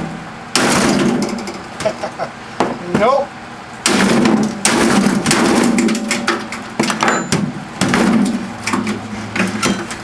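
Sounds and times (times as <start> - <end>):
metal parts clattering and scraping: 5.6 - 10.0.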